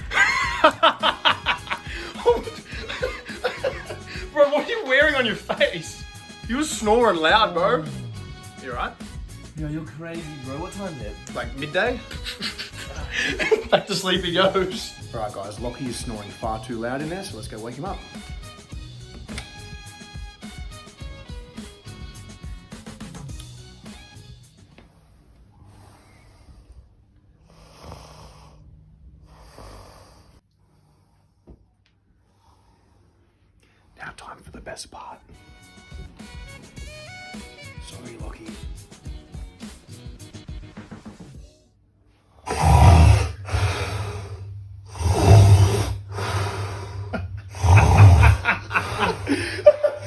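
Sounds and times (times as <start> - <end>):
man snoring: 7.6 - 9.4, 24.9 - 31.5, 42.3 - 50.0
breath out: 41.3 - 49.6.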